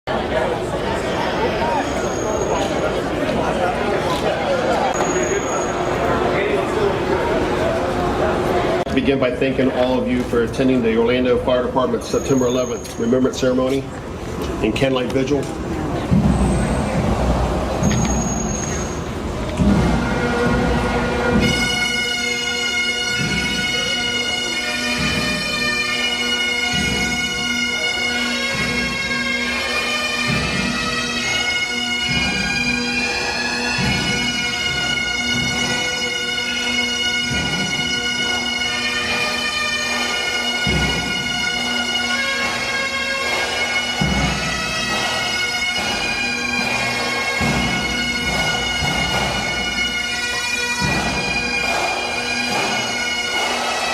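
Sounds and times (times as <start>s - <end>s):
bagpipes playing over drone: 17.8s - 53.9s.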